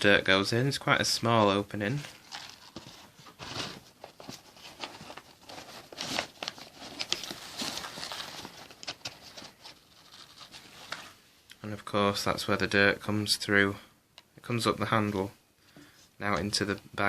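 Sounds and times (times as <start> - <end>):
paper dust bag rustling: 2.0 - 11.2.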